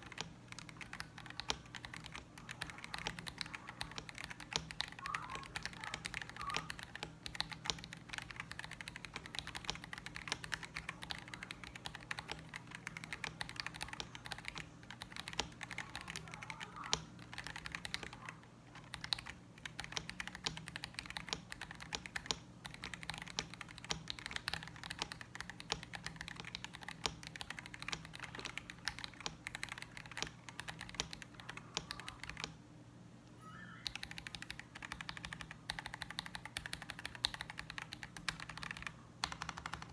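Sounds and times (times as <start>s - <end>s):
mechanical keyboard typing clacks: 0.0s - 32.6s, 33.8s - 39.9s.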